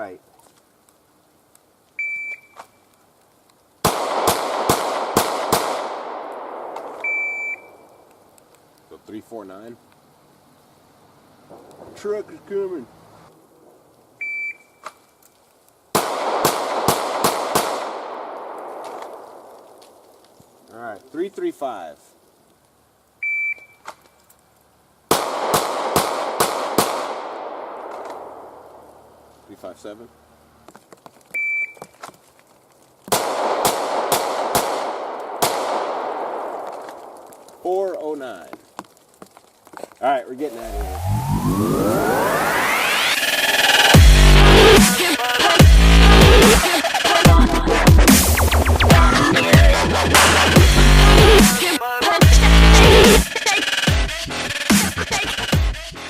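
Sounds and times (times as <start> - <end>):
pistol shots echoing: 3.8 - 7.9, 15.9 - 19.5, 25.1 - 28.8, 33.1 - 37.2
shot timer beep: 7.1 - 7.7.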